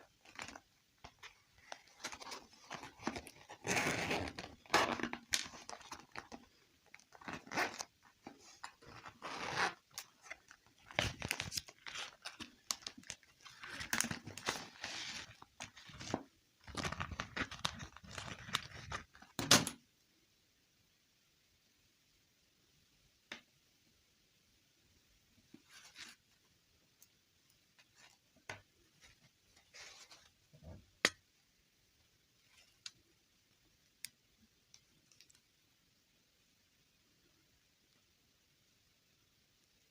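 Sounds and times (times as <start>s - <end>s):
packaging crinkling and tearing: 0.2s - 19.5s.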